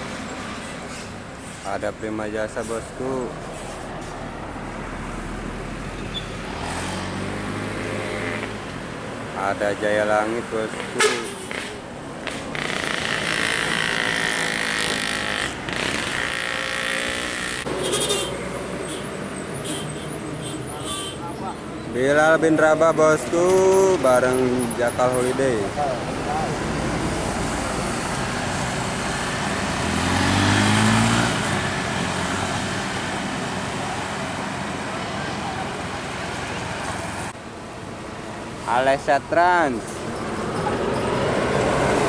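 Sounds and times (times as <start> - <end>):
tyre and traffic noise: 0.0 - 42.0
heavy vehicle engine passing: 21.4 - 37.4, 38.9 - 42.0.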